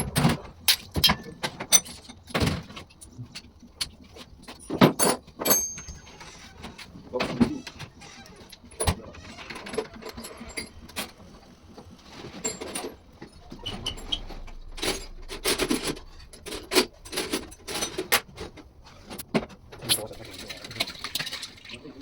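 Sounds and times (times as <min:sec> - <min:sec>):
metal parts and tools clinking: 0:04.5 - 0:06.6, 0:12.2 - 0:21.5.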